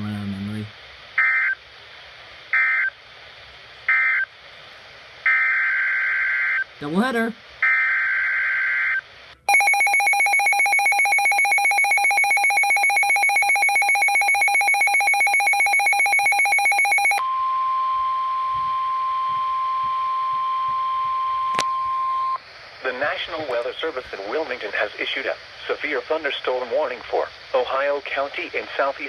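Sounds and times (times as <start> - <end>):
rapidly pulsing electronic alarm: 1.2 - 1.6, 3.9 - 4.3, 5.2 - 6.7, 7.6 - 22.4
steady single-pitch alarm tone: 1.2 - 1.6, 2.6 - 2.9, 3.9 - 4.3, 5.3 - 6.7, 7.6 - 22.4
warbling data tones: 9.5 - 17.2.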